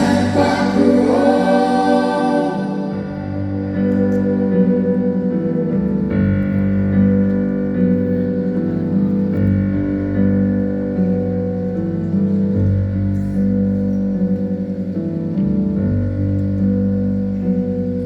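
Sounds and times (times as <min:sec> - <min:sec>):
person singing: 0:00.0 - 0:06.6
guitar: 0:00.0 - 0:18.0
piano chords: 0:00.0 - 0:18.0.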